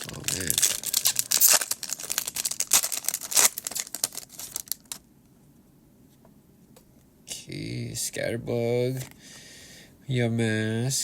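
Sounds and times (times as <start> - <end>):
foil wrapper crinkling and tearing: 0.0 - 5.0.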